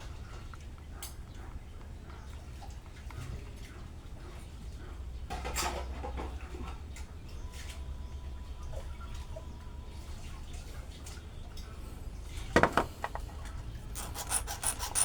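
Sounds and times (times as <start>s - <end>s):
low steady hum: 0.0s - 13.9s
rubbing and scraping handling noise: 12.5s - 13.4s.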